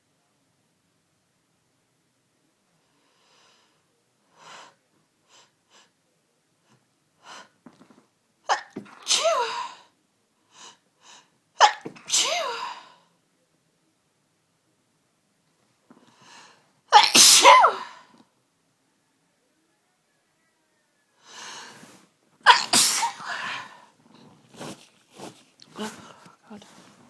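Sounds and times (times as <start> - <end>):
woman sneezing: 8.5 - 9.9, 11.6 - 12.9, 16.9 - 18.1, 22.4 - 23.8, 25.7 - 26.9.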